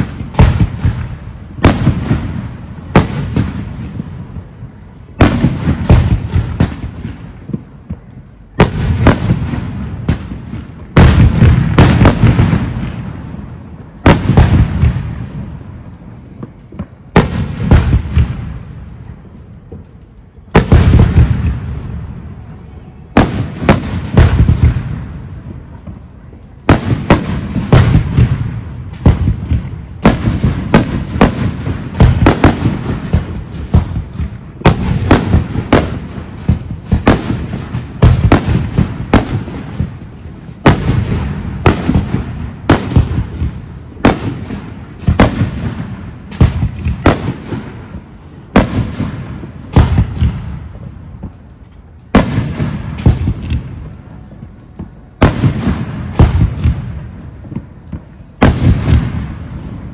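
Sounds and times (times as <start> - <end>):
fireworks bursting with bangs: 0.0 - 59.9.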